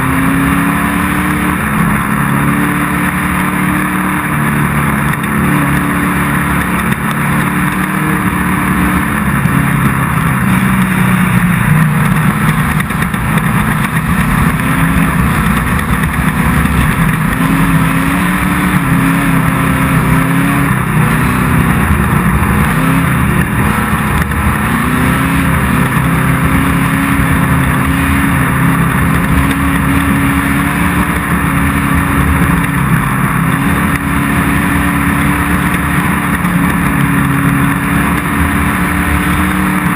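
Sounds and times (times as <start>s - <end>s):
race car engine running hard: 0.0s - 39.9s.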